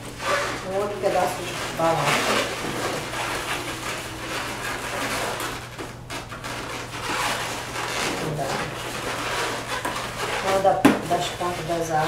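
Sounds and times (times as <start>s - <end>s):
balloons rubbing and rustling: 0.0s - 12.0s
steady low hum: 0.0s - 12.0s.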